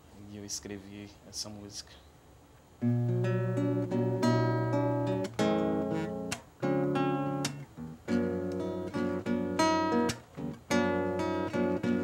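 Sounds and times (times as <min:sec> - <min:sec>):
acoustic guitar strumming chords: 0:02.8 - 0:12.0.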